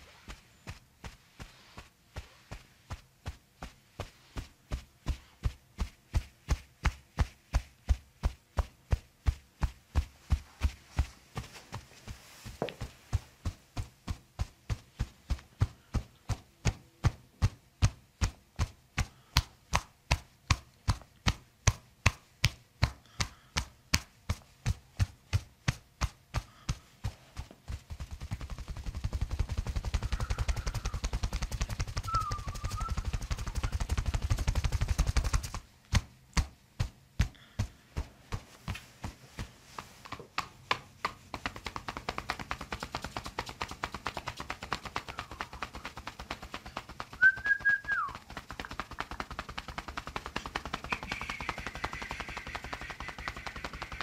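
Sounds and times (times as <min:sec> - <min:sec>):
fast continuous rattle: 0:26.4 - 0:35.7, 0:41.1 - 0:54.0
rhythmic tapping knocks: 0:48.2 - 0:54.0.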